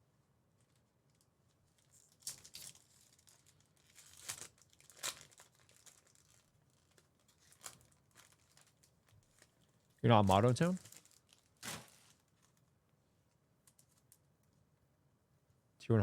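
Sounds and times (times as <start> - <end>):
foil wrappers tearing and crinkling: 1.8 - 9.6, 10.6 - 12.7.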